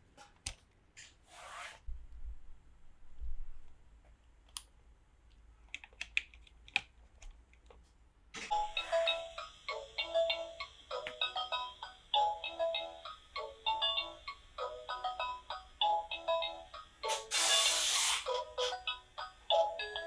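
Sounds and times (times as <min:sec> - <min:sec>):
electronic ringtone melody: 0:08.6 - 0:20.0.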